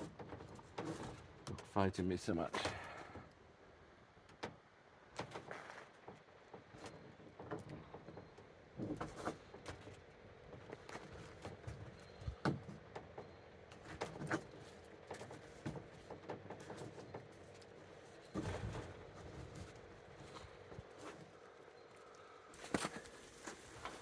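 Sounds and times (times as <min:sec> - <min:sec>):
faint steady hum: 0:17.1 - 0:24.0.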